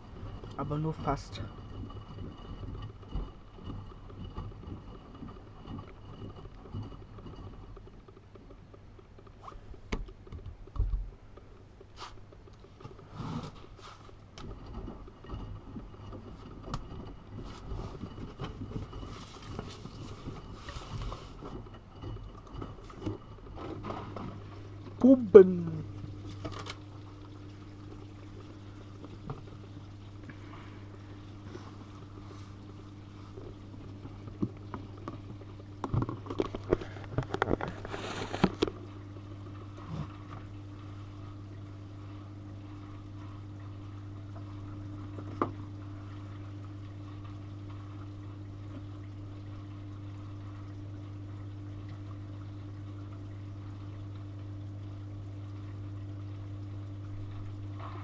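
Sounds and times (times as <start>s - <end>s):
water pouring and gurgling: 0.0s - 9.3s, 12.6s - 58.0s
water sloshing and clatter: 0.0s - 58.0s
pump hum: 12.6s - 58.0s.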